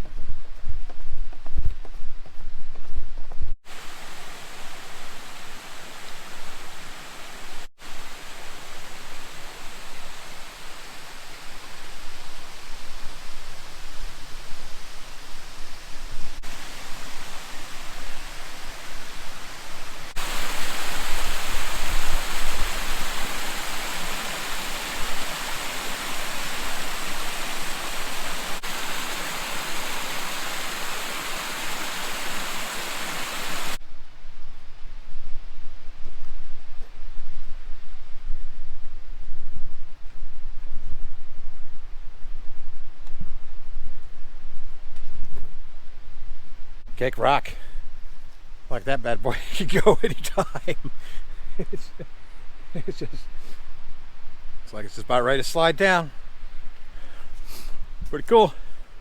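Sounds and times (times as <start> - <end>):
waterfall rushing: 3.7 - 15.2, 15.8 - 33.8.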